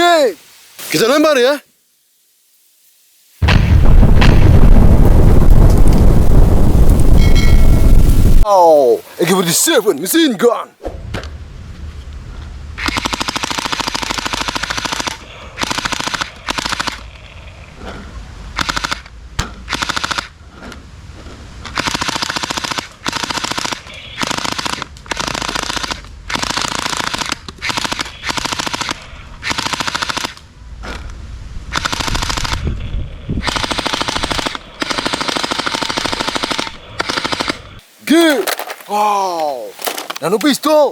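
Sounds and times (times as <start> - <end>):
toy machine gun rapid fire: 12.8 - 17.0, 18.6 - 19.0, 21.8 - 30.4, 33.4 - 37.6.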